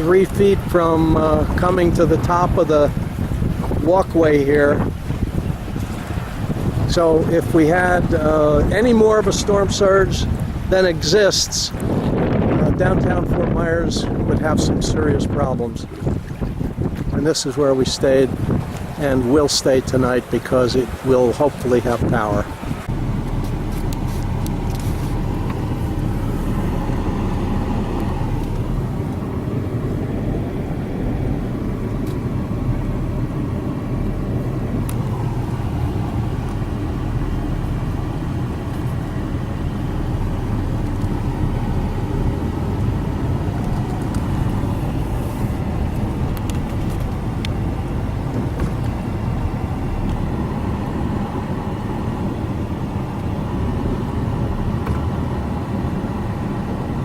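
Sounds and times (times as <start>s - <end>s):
road rumble: 0.0s - 57.0s
car engine: 18.0s - 57.0s.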